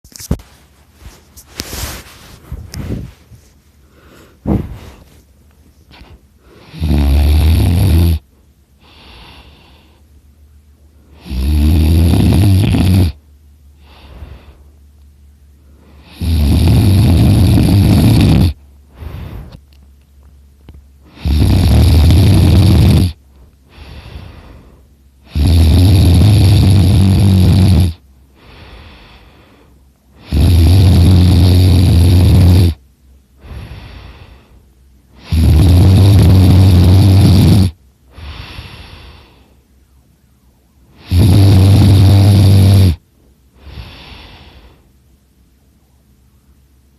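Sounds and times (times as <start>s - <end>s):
soft breathing: 0.3s - 6.8s, 8.2s - 10.2s, 13.7s - 16.2s, 18.5s - 20.0s, 23.2s - 25.3s, 28.2s - 30.3s, 33.3s - 35.3s, 38.0s - 39.9s, 42.2s - 46.4s
person snoring loudly: 5.9s - 10.0s, 11.1s - 13.2s, 15.8s - 19.6s, 21.1s - 24.6s, 25.2s - 29.2s, 30.2s - 32.8s, 35.2s - 39.4s, 41.0s - 43.0s.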